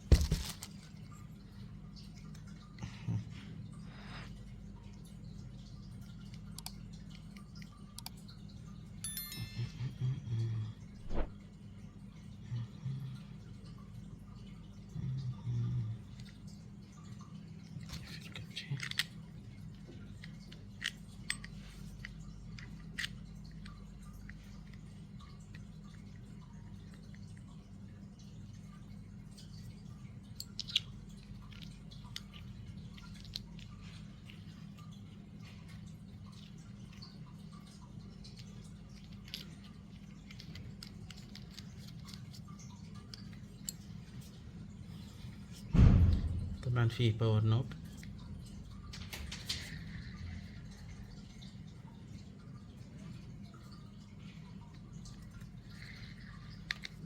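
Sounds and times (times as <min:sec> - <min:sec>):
faint steady hum: 0:00.0 - 0:57.0
low hum: 0:09.0 - 0:14.0.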